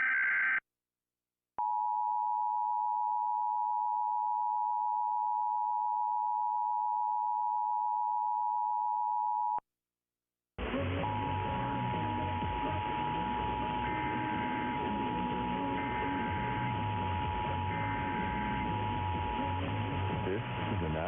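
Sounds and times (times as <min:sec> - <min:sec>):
harsh electronic data burst: 0:11.0 - 0:21.0.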